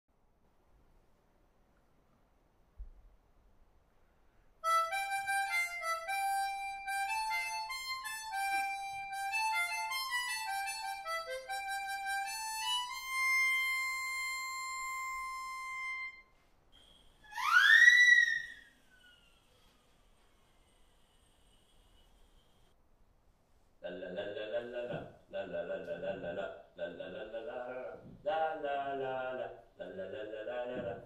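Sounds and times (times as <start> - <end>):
harmonica playing a tune: 4.6 - 16.4
rising sliding whistle: 16.8 - 19.5.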